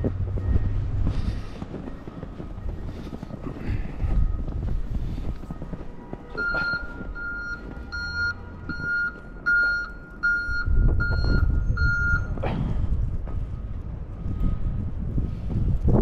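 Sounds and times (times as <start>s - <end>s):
low rumble: 0.0s - 6.1s, 9.8s - 16.0s
wind buffeting microphone: 0.0s - 8.1s, 10.2s - 16.0s
reversing alarm beeping: 0.2s - 3.1s, 6.3s - 12.4s.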